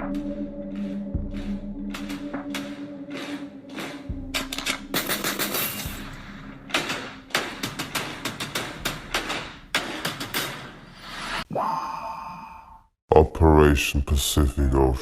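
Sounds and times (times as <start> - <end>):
sharp percussive hits: 0.0 - 10.9.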